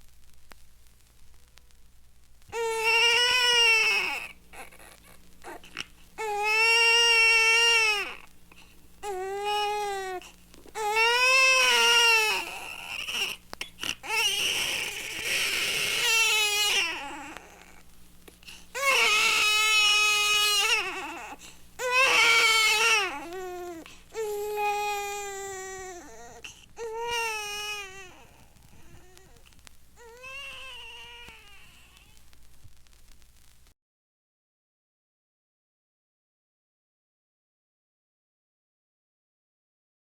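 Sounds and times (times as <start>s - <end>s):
baby crying: 2.5s - 8.3s, 9.0s - 17.8s, 18.7s - 29.4s, 30.0s - 32.2s.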